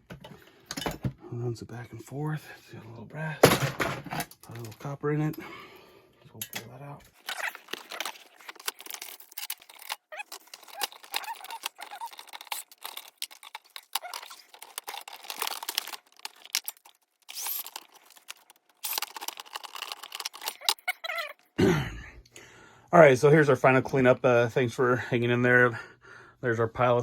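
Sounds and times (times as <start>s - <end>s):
typewriter parts clicking and rattling: 7.4s - 21.0s.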